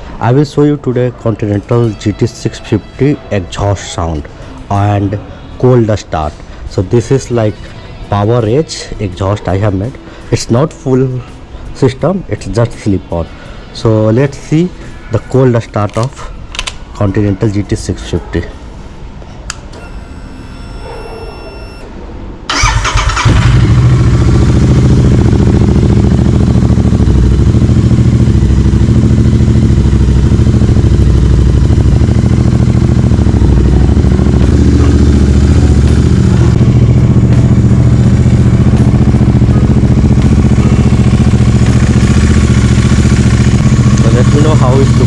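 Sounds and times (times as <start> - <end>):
starter cranking: 22.5 - 24.0
motorcycle engine idling: 22.5 - 45.0.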